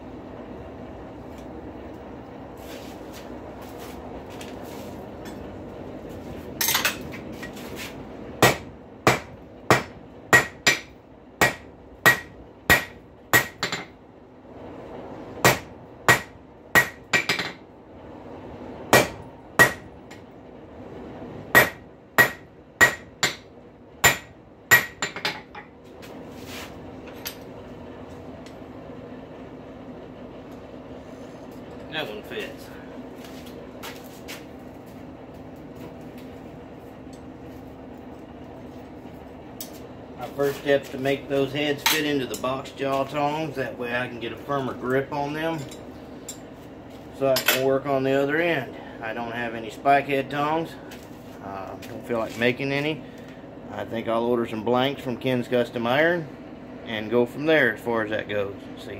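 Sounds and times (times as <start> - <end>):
steady hum: 0.0 - 58.9
hammer striking metal on anvil: 8.4 - 13.9, 15.4 - 17.6, 18.9 - 19.9, 21.5 - 25.7.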